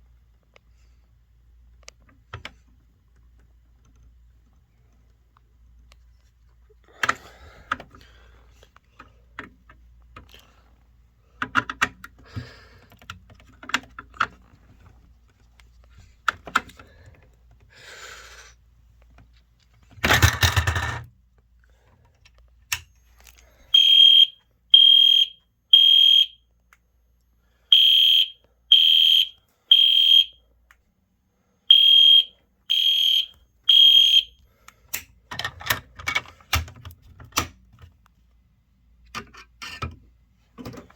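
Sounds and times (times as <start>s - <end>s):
fire alarm horn beeps: 23.7s - 26.4s, 27.7s - 30.4s, 31.7s - 34.4s.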